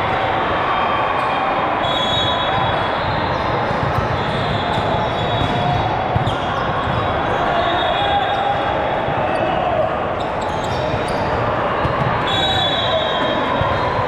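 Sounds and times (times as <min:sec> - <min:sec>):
crowd din: 0:00.0 - 0:14.0
balls bouncing on a court: 0:02.2 - 0:07.5, 0:10.4 - 0:14.0
shoe squeaks: 0:04.1 - 0:08.5, 0:10.2 - 0:11.4.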